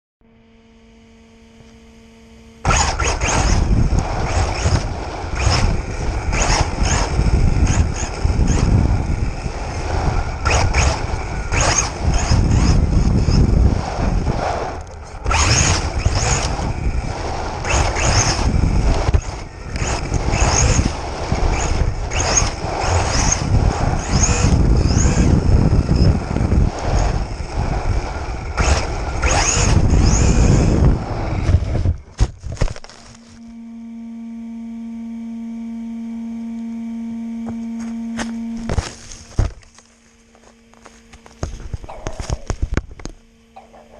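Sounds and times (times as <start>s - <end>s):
ground and wind noise: 0.2s - 43.9s
high motor whine: 0.2s - 43.9s.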